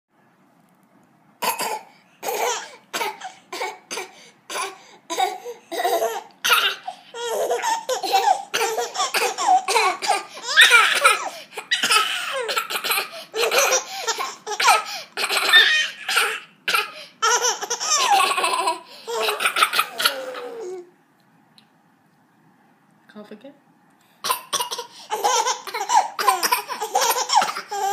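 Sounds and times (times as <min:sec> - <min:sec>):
baby laughing: 0:04.5 - 0:20.9, 0:24.2 - 0:27.9.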